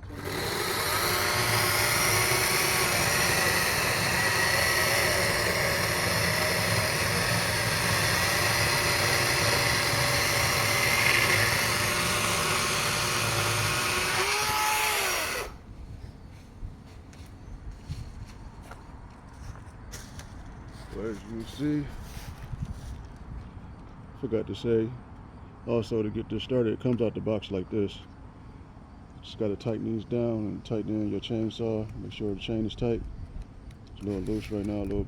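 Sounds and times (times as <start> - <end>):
electric chainsaw cutting log: 0.0 - 15.6.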